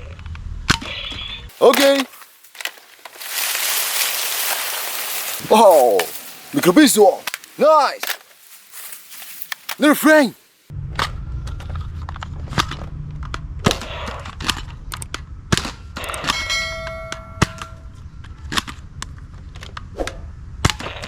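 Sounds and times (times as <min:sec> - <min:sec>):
brief ringing tone: 0:16.4 - 0:17.8.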